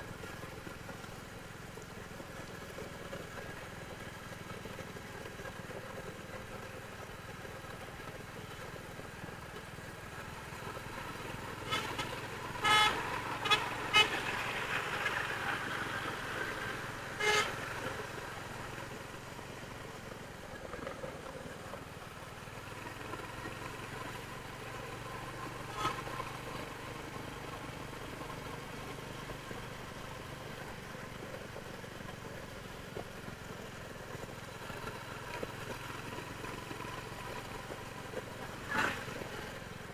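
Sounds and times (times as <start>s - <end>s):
motorcycle engine running: 0.0s - 39.9s
vehicle horns honking: 11.6s - 15.0s, 17.2s - 17.8s.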